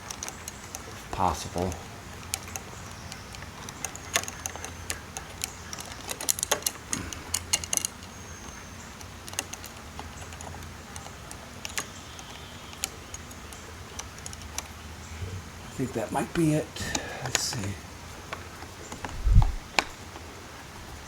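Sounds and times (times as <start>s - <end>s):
metallic clicks of screws: 1.6s - 8.1s
steady low hum: 14.7s - 20.0s.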